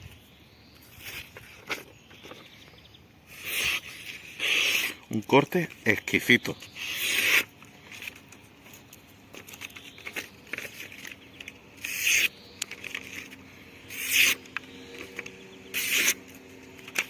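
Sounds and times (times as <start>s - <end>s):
small clicks and handling noises: 7.6s - 11.9s, 12.5s - 13.5s, 16.2s - 17.0s
knife blade scraping swishes: 13.9s - 14.4s, 15.7s - 16.2s.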